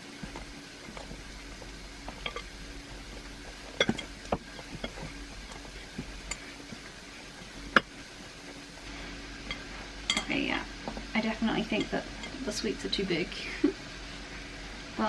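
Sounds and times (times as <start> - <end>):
spoon scraping a mixing bowl: 0.0 - 10.3.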